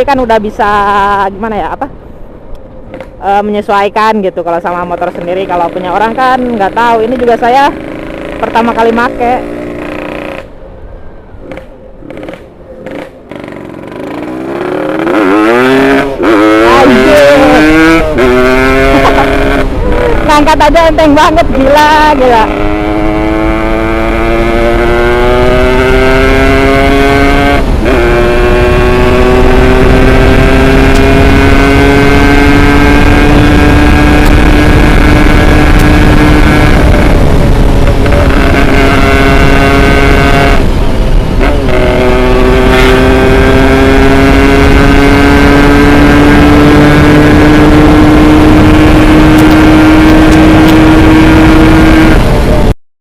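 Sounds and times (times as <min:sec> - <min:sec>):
two-stroke motorcycle engine revving: 0:05.0 - 0:10.5, 0:11.4 - 0:52.8.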